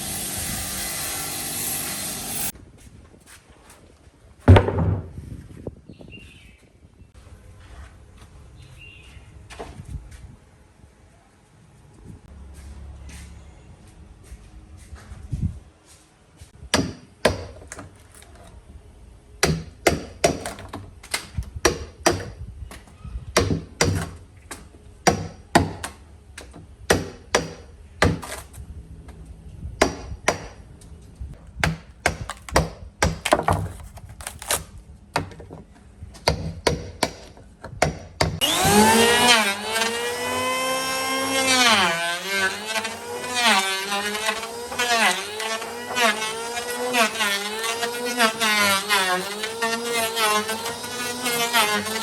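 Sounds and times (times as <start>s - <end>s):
power tool motor running: 0.0s - 2.5s, 38.4s - 52.0s.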